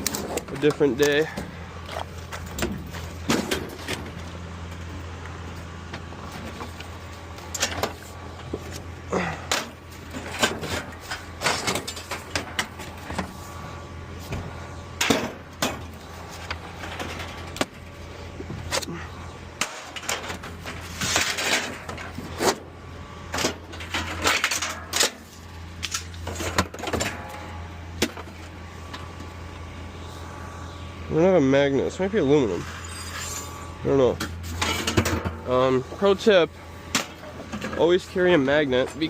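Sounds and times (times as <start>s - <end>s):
scrap metal clanking and crashing: 0.0s - 4.9s, 6.2s - 13.6s, 15.0s - 18.0s, 18.6s - 22.7s, 23.3s - 28.5s, 32.6s - 36.2s
steady low hum: 0.0s - 39.0s.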